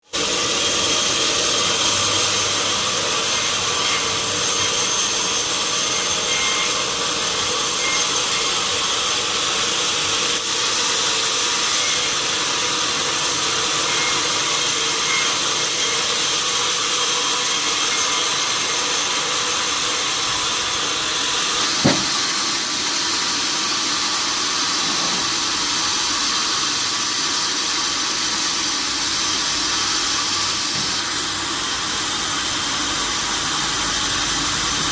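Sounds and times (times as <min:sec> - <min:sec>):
sawmill saw hissing: 0:00.0 - 0:34.9
sharp knock: 0:21.8 - 0:22.2.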